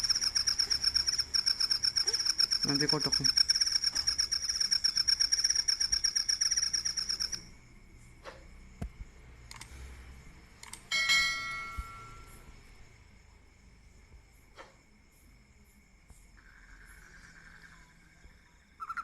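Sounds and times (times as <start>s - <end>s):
rapid pulsing animal trill: 0.0s - 7.4s
short ringing chime: 10.9s - 12.6s.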